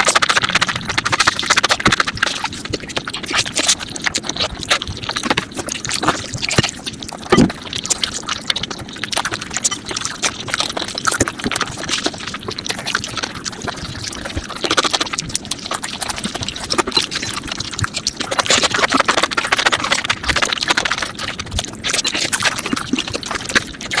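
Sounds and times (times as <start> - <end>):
wet chewing and smacking: 0.0 - 24.0.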